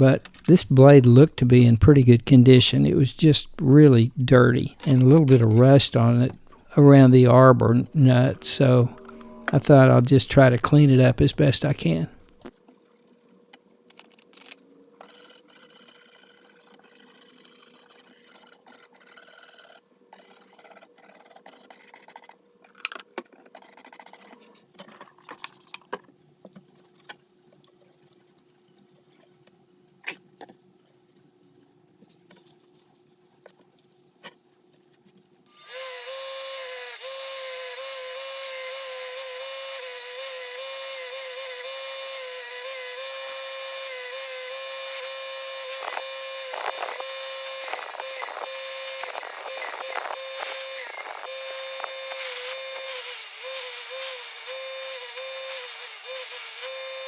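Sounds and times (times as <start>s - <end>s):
power tool whining: 4.5s - 6.8s, 7.4s - 12.5s, 35.5s - 57.0s
sharp clicks and knocks: 4.6s - 6.7s.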